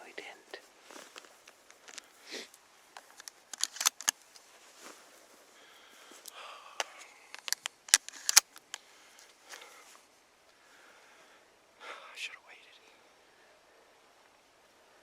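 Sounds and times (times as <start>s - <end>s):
handling noise: 0.9s - 5.5s, 6.8s - 8.8s
small sharp clicks: 3.0s - 4.4s, 6.2s - 9.6s.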